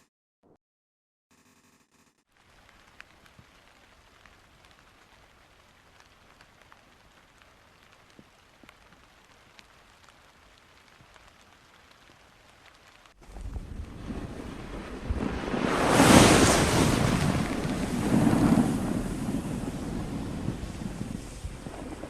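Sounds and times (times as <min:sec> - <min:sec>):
ticks of single raindrops: 0:02.3 - 0:14.3
faint rain hiss: 0:02.3 - 0:22.0.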